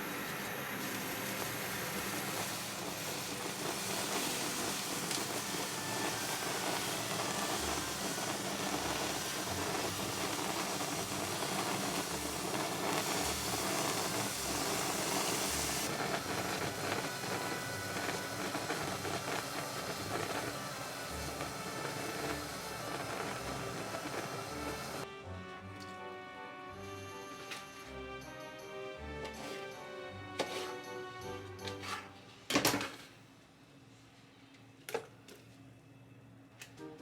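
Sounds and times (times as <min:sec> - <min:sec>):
food hissing and crackling in pan: 0:00.0 - 0:25.1.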